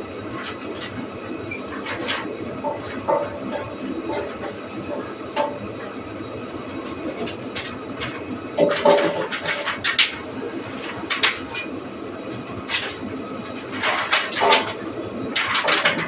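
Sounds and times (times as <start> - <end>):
sawmill machinery rumbling: 0.0 - 16.0.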